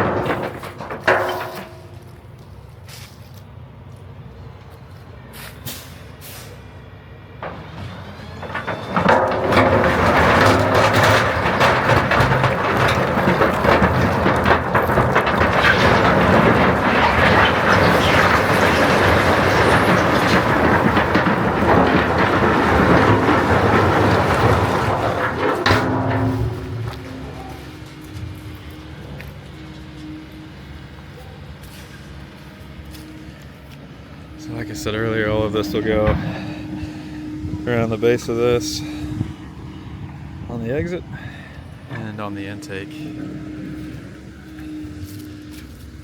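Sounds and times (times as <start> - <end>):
loose stone rattling: 0.0 - 2.4, 7.4 - 28.6
heavy equipment engine running: 0.0 - 46.0.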